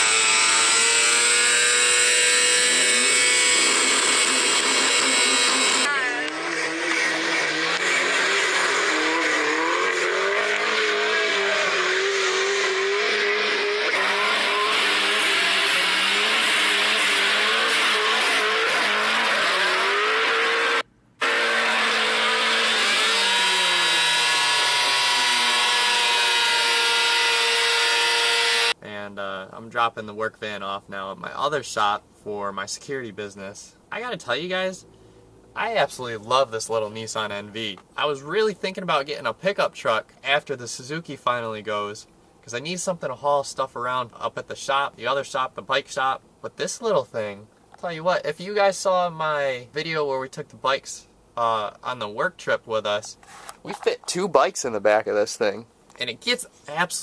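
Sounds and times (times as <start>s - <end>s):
motorcycle engine running hard: 0.0s - 12.8s, 14.1s - 28.7s.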